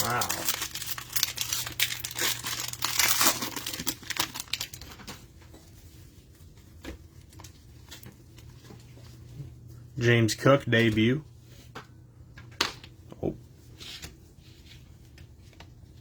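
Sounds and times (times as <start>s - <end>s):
cellophane crinkling and tearing: 0.0s - 5.2s.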